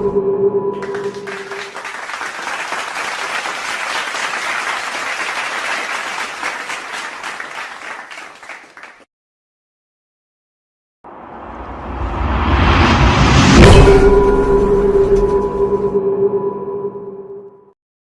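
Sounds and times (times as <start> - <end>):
crowd applauding: 0.8 - 9.1.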